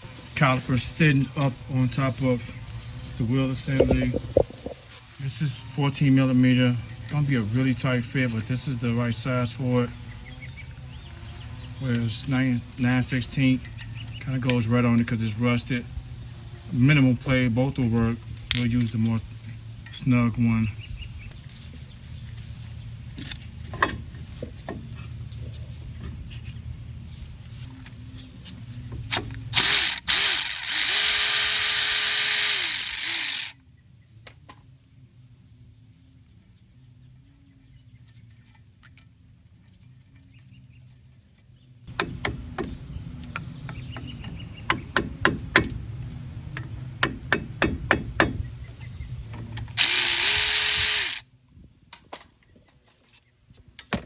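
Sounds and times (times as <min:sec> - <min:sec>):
cordless power tool driving a bolt: 0:29.6 - 0:33.5, 0:49.8 - 0:51.2
ratchet-like clicking: 0:29.6 - 0:33.5, 0:49.8 - 0:51.2.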